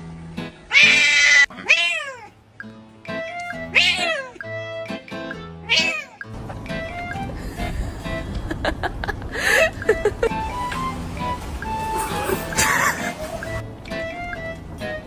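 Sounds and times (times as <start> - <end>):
cat meowing: 0.7 - 2.4, 3.6 - 4.8, 5.6 - 6.3
background music: 2.5 - 15.0.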